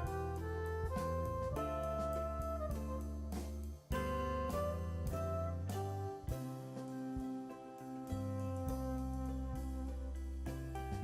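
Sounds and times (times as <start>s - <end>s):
instrumental chords: 0.0s - 11.0s.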